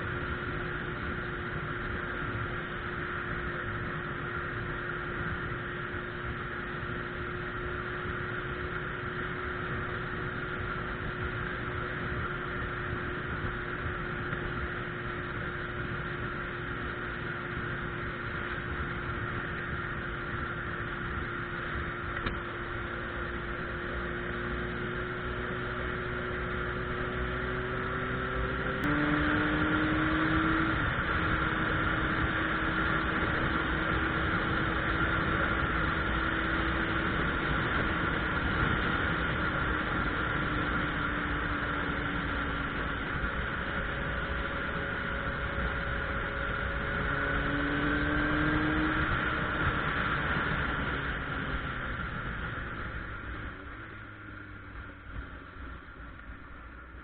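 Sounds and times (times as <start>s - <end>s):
motorcycle engine running: 0.0s - 57.0s
wind noise: 27.0s - 53.2s.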